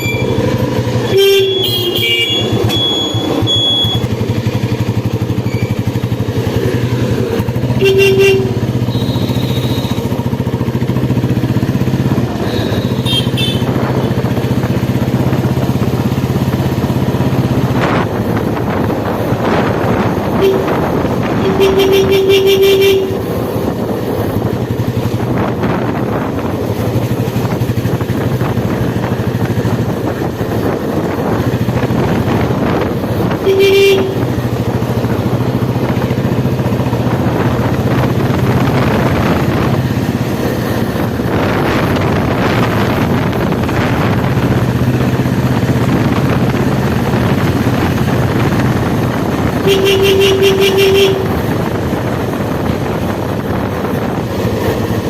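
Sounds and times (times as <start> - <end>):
vehicle horn honking: 0.0 - 4.1, 7.6 - 10.2, 12.2 - 14.2, 20.2 - 23.6, 33.2 - 34.6, 49.5 - 51.6
motorcycle engine running: 0.0 - 55.0
road and wind noise: 0.0 - 55.0.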